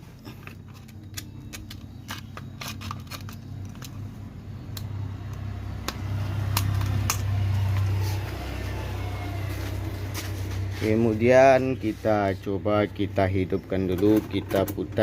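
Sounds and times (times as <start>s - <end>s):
sharp clicks and knocks: 4.7s - 7.4s.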